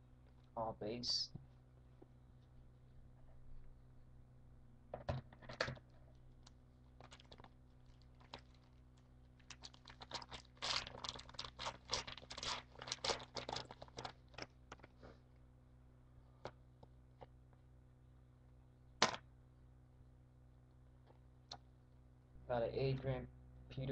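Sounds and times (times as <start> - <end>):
foil wrapper crinkling: 6.4 - 15.0.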